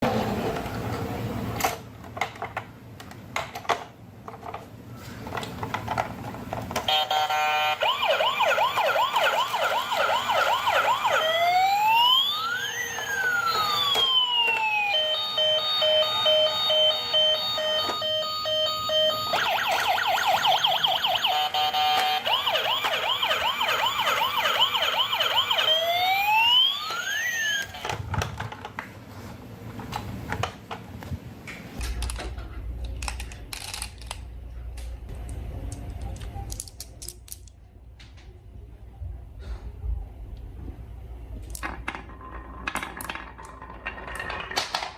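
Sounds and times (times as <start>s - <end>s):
emergency siren: 6.9s - 27.8s.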